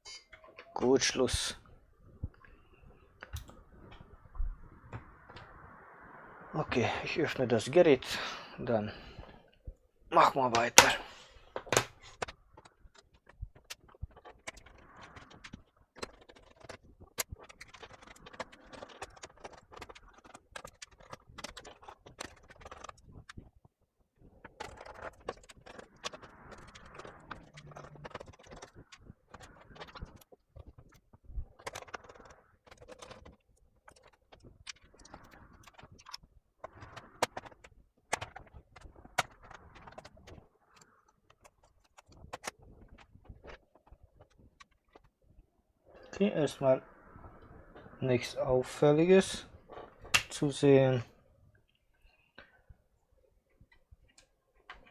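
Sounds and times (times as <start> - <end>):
laptop parts clicking and scraping: 10.5 - 23.0, 49.8 - 50.4.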